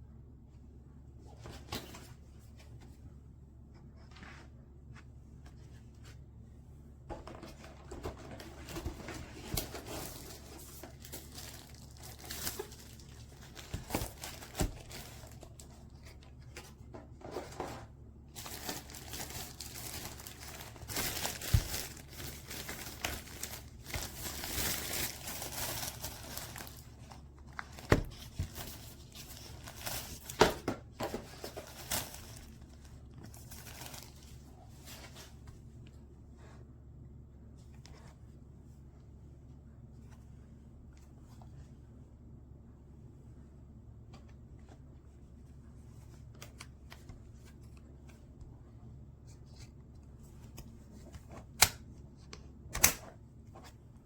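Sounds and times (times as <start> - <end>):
plastic packaging crinkling: 9.4 - 16.3, 18.3 - 34.4.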